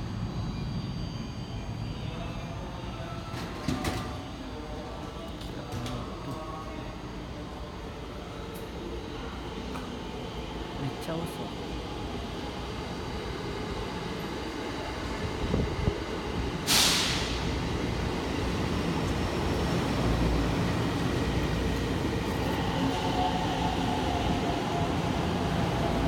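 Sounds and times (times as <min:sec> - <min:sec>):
electric train rumbling: 0:11.4 - 0:26.0
sharp air hiss: 0:16.7 - 0:17.5.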